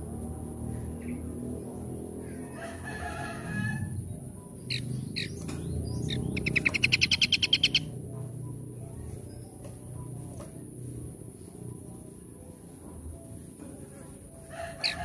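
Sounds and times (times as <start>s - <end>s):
small songbird singing: 4.0s - 10.1s.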